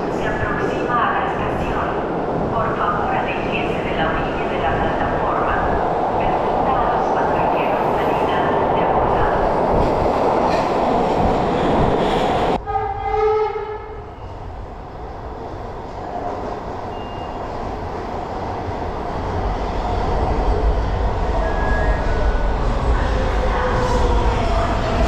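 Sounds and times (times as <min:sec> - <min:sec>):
train running noise: 0:00.0 - 0:13.2
train horn blast: 0:12.6 - 0:14.0.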